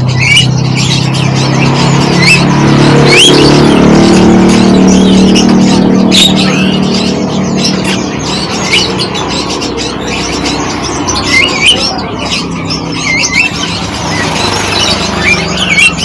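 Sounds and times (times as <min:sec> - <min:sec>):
songbirds chirping: 0:00.0 - 0:16.0.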